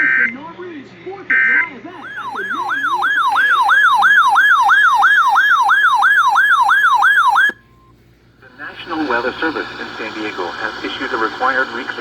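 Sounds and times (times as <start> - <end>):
electronic siren sweeping: 2.0 - 7.6.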